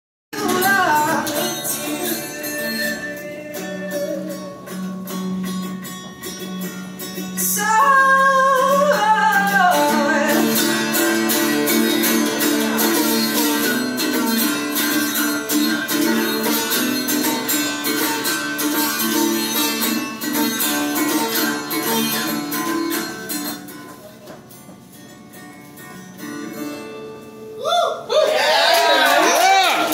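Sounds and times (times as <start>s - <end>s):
woman singing: 0.3s - 5.0s, 7.4s - 11.2s
guitar strummed: 0.4s - 27.6s.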